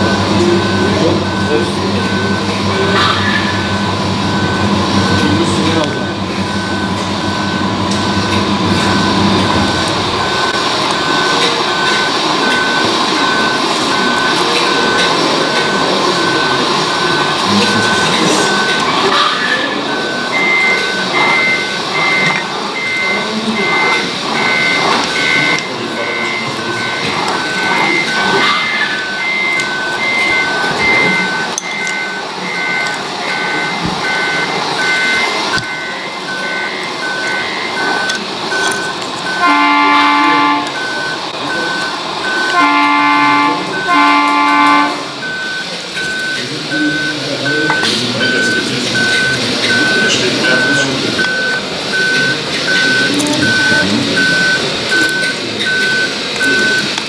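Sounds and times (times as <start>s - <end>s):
diesel engine running: 0.0s - 57.0s
reversing beepers beeping: 0.0s - 57.0s
short horn blasts: 39.3s - 40.8s, 42.5s - 45.2s.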